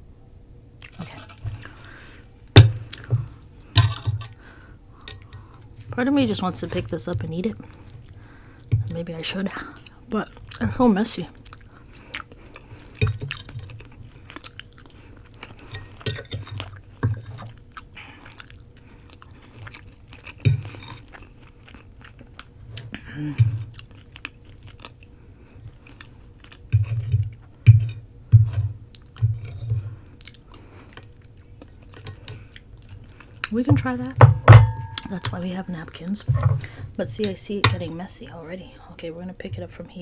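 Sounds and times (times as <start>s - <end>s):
wet chewing with clicks: 11.3s - 15.6s, 16.5s - 27.9s, 28.9s - 34.1s.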